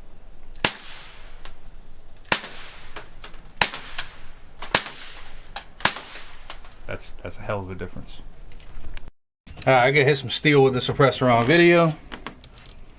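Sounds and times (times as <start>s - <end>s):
suppressed pistol shots: 0.6s - 1.6s, 2.2s - 6.7s.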